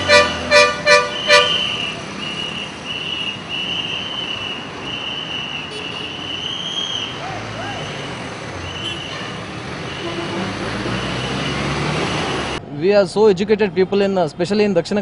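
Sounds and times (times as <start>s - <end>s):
vehicle air horn blasts: 0.0s - 1.9s, 10.0s - 10.5s
traffic noise: 0.0s - 15.0s.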